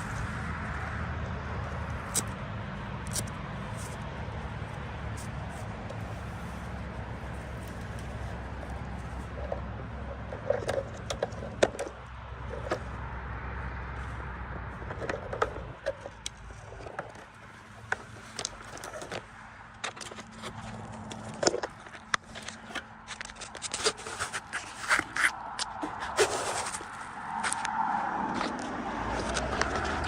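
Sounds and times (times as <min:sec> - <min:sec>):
short scrapes: 0:23.6 - 0:27.6.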